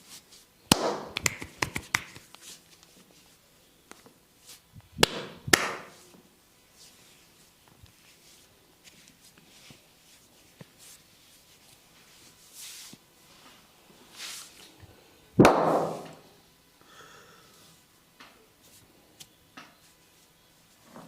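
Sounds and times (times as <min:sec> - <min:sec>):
hands rubbing hair and skin: 0:00.0 - 0:04.7, 0:05.6 - 0:14.8
hand slap: 0:00.7 - 0:02.4, 0:05.0 - 0:06.0, 0:15.4 - 0:16.2.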